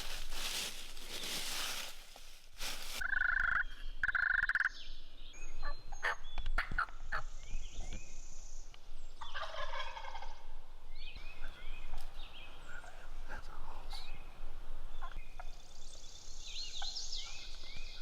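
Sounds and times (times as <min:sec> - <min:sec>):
turkey gobbling: 0:09.2 - 0:10.4.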